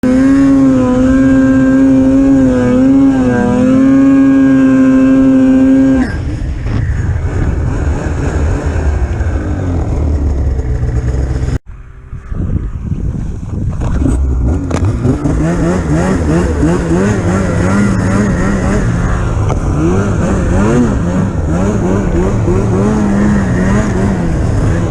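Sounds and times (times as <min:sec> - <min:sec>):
snowmobile engine whining: 0:00.0 - 0:24.9.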